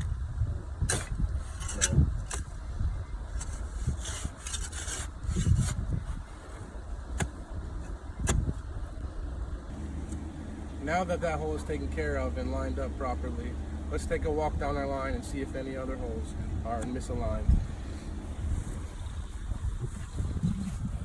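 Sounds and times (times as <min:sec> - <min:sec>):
digger blades scraping soil: 0:00.9 - 0:02.7, 0:03.3 - 0:08.7.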